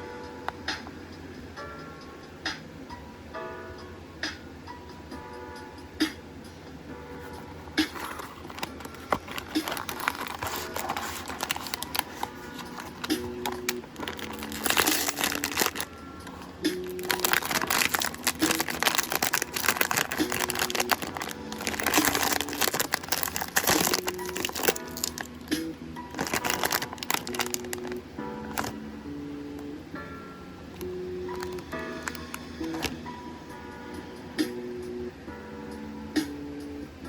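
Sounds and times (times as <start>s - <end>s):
background music with held notes: 0.0s - 37.0s
packaging crinkling and rustling: 7.8s - 25.5s, 26.1s - 28.8s, 30.8s - 33.0s.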